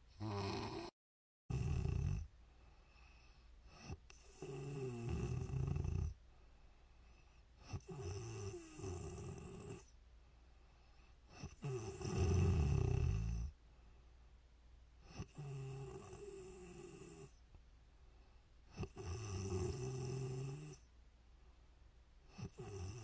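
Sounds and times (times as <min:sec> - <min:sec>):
woman snoring: 0:00.2 - 0:02.3, 0:03.8 - 0:06.2, 0:07.6 - 0:09.9, 0:11.4 - 0:13.5, 0:15.1 - 0:17.4, 0:18.8 - 0:20.8, 0:22.4 - 0:23.0.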